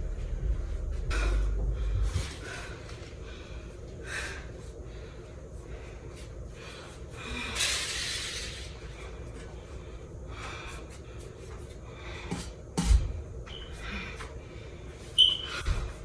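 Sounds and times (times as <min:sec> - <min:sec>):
person breathing: 0:00.0 - 0:07.9, 0:08.8 - 0:12.7
steady low hum: 0:00.0 - 0:16.0.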